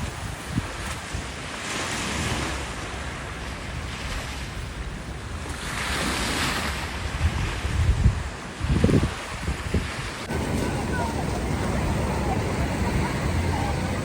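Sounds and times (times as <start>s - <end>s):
wind buffeting microphone: 0.0s - 1.5s, 6.8s - 14.0s
surf washing on shore: 0.0s - 14.0s.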